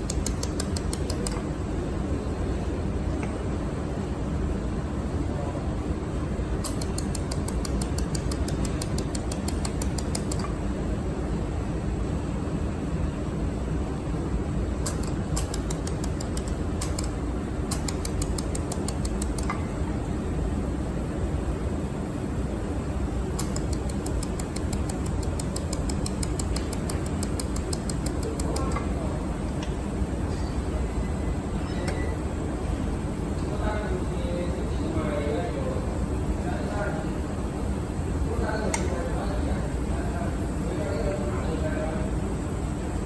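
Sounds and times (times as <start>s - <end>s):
laser welder sharp ticks: 0.0s - 1.4s, 6.6s - 10.5s, 14.8s - 19.6s, 23.4s - 28.8s
cooling fan hum: 0.0s - 43.0s.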